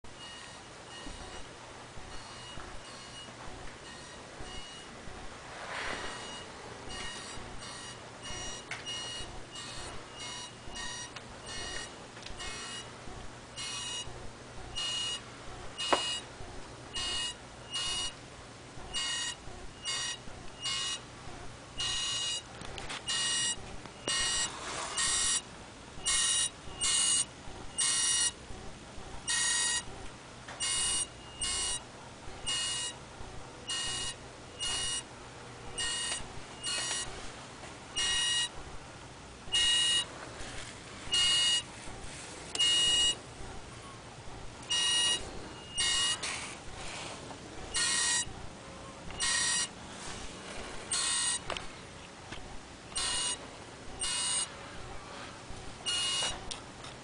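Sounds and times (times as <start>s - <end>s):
high buzzing bursts: 0.1s - 31.8s, 32.4s - 37.2s, 44.3s - 49.8s, 50.7s - 51.6s, 52.9s - 54.9s.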